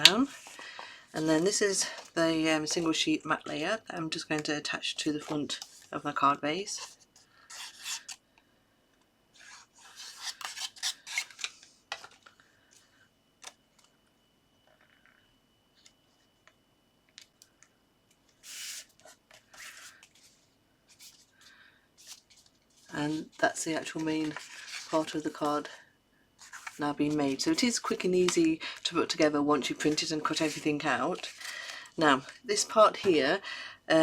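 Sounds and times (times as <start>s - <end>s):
paper scraping and rustling: 9.4s - 12.2s, 18.4s - 21.3s, 22.0s - 25.7s, 26.4s - 28.4s, 29.6s - 31.6s.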